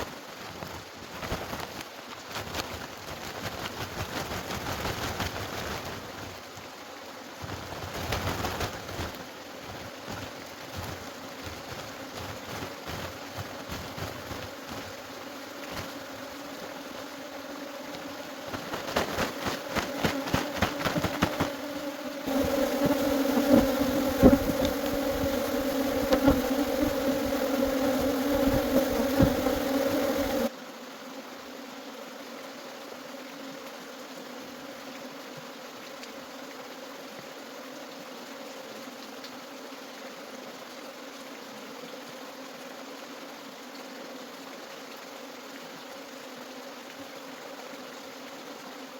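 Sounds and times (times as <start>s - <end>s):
honeybees buzzing: 9.8s - 35.3s.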